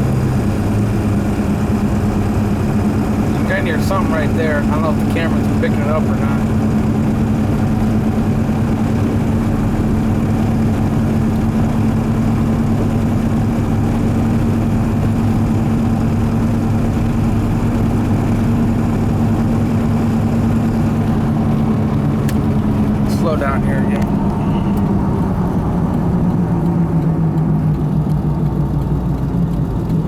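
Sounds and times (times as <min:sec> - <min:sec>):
diesel truck engine drone: 0:00.0 - 0:30.0
road noise: 0:00.0 - 0:30.0.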